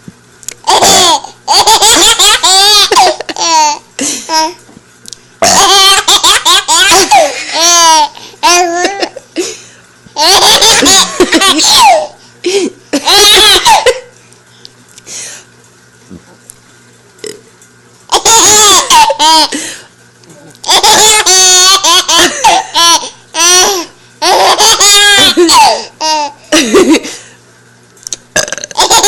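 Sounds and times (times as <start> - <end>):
child laughing: 0.6 - 4.6, 5.4 - 9.4, 10.2 - 14.1, 18.1 - 19.6, 20.6 - 27.1, 28.8 - 29.0.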